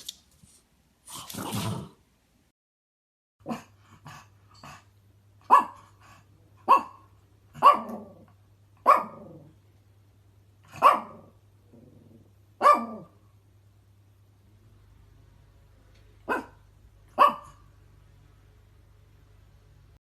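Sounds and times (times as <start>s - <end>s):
dog barking: 5.5s - 5.8s, 6.6s - 8.1s, 8.8s - 9.3s, 10.7s - 11.4s, 12.6s - 13.2s, 16.2s - 17.7s.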